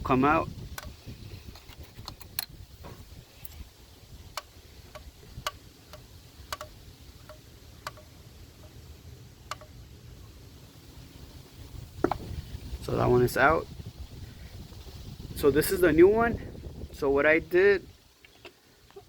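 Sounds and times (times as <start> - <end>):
sharp plastic clicks: 4.3 - 8.1.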